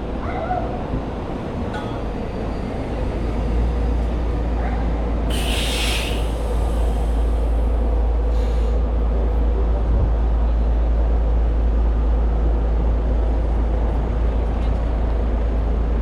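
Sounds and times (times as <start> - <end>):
street traffic rumbling: 0.0 - 16.0
air brake hiss: 5.3 - 7.7, 8.3 - 8.8.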